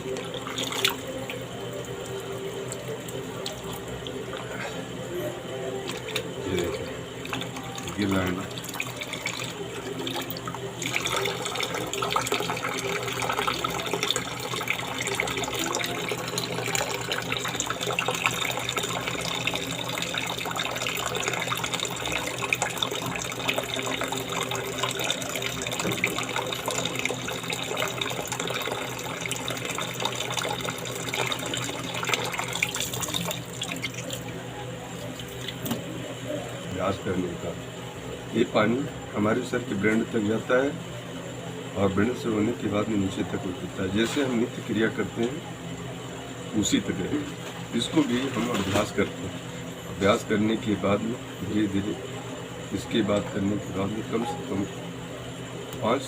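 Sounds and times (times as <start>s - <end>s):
water running and splashing: 5.9s - 34.4s.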